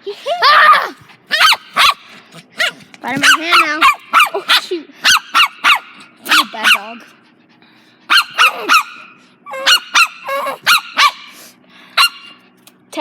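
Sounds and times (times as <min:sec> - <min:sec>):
dog barking: 0:01.3 - 0:07.0, 0:08.1 - 0:11.4, 0:12.0 - 0:12.4.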